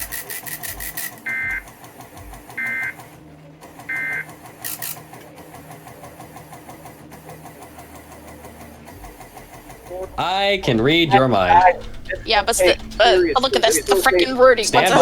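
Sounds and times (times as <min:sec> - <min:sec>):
steady low hum: 0:08.3 - 0:15.0.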